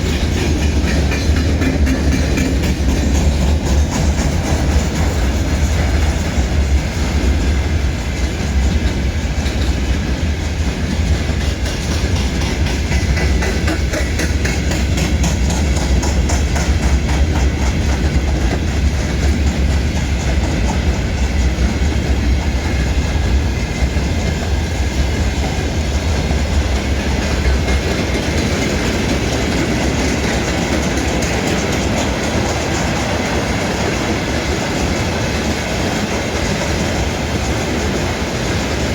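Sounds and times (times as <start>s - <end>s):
railway cars rumbling past: 0.0s - 38.9s
wheels clattering over rail joints: 0.0s - 38.9s.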